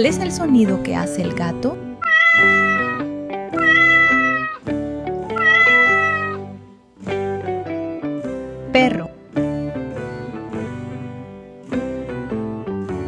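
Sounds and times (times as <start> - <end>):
cheerful background music: 0.0 - 13.0
cat meowing: 2.0 - 6.6.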